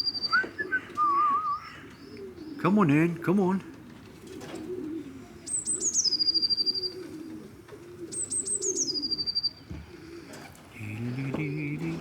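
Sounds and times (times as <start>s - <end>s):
pigeons cooing: 0.0s - 2.8s, 3.7s - 12.0s
small bird singing: 5.5s - 7.0s, 8.1s - 9.7s.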